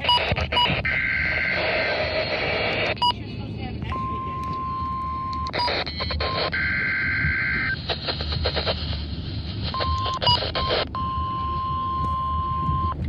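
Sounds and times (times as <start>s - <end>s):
crackling: 0.0s - 3.1s, 3.8s - 11.0s
high warning alarm tone: 0.0s - 3.2s
radio static: 0.0s - 12.2s.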